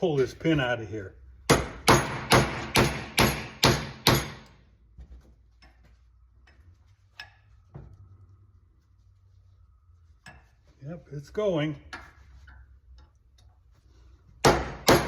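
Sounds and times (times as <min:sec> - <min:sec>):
hammer striking metal punch: 0:01.5 - 0:04.6, 0:14.4 - 0:15.0.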